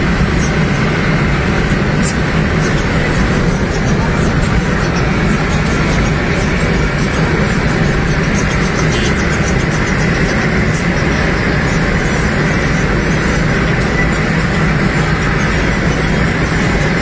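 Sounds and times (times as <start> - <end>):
car engine drone: 0.0 - 17.0.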